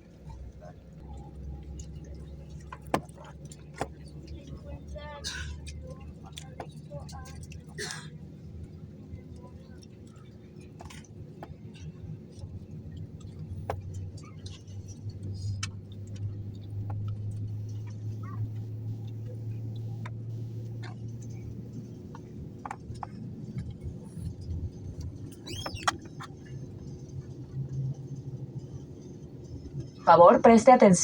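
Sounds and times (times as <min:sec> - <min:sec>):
aircraft cabin hum: 0:00.0 - 0:31.0
small clicks and rustles: 0:08.6 - 0:29.9.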